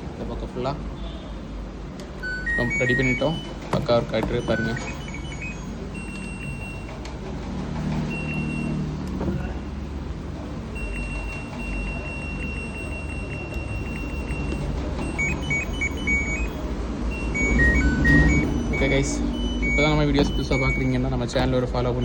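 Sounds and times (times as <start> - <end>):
high electronic tone: 2.2 - 3.5, 4.2 - 6.9, 10.8 - 21.3
electronic beeps: 2.2 - 6.9, 8.0 - 8.8, 10.7 - 22.0.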